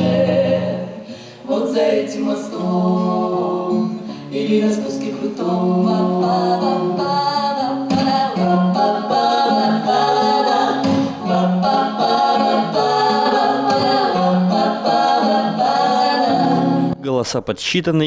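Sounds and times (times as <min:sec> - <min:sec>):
pop song with vocals: 0:00.0 - 0:17.0.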